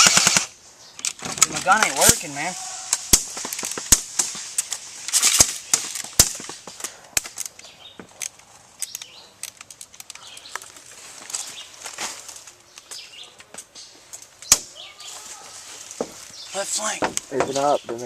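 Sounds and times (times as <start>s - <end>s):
airsoft guns firing: 0.0s - 0.5s.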